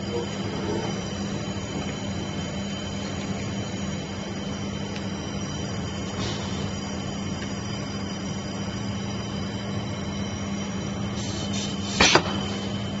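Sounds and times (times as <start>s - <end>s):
welding equipment humming: 0.0s - 13.0s
loud burst of noise: 10.7s - 13.0s.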